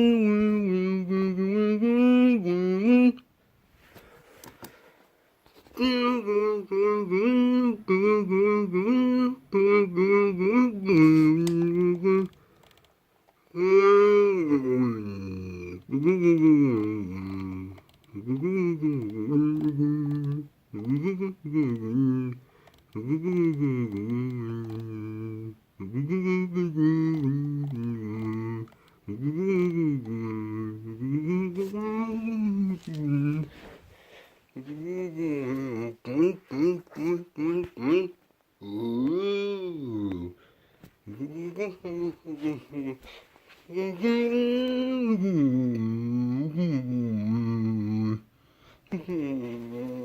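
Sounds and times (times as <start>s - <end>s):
person humming a tune: 0.0s - 3.3s, 5.8s - 12.4s, 13.5s - 33.8s, 34.6s - 48.3s, 48.9s - 50.0s.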